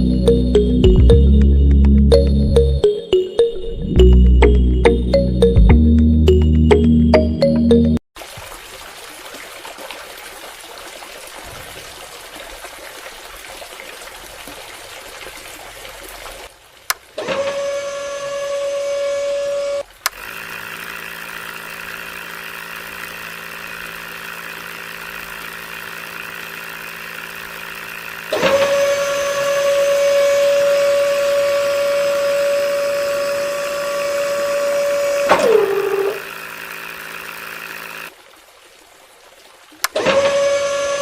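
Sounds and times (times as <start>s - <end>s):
low motor hum: 0.0s - 2.9s, 3.6s - 7.5s, 17.4s - 38.2s
high-pitched electric motor whine: 17.4s - 38.1s.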